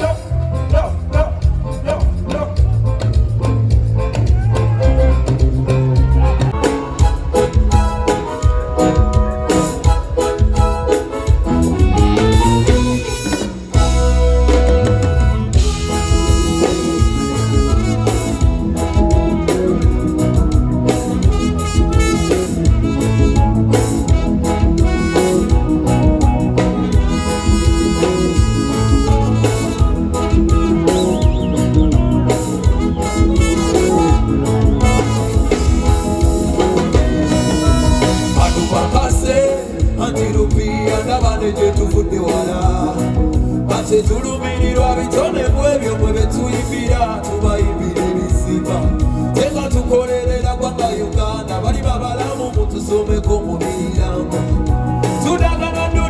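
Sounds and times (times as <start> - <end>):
bass and drum beat: 0.0 - 56.0
live band playing instrumental music: 0.0 - 56.0
person singing: 30.5 - 56.0.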